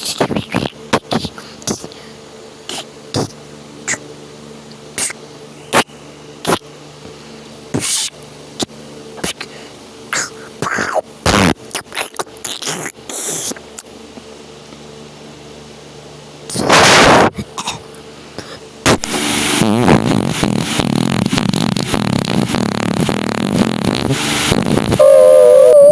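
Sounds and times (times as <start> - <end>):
dense crackling rumble: 19.9 - 25.0.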